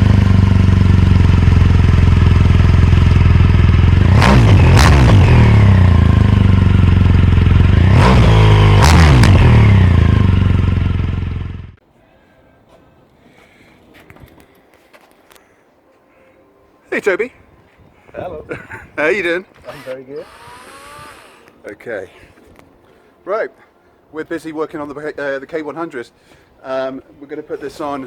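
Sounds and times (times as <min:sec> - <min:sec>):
motorcycle engine running: 0:00.0 - 0:11.8
wind noise: 0:17.3 - 0:21.5.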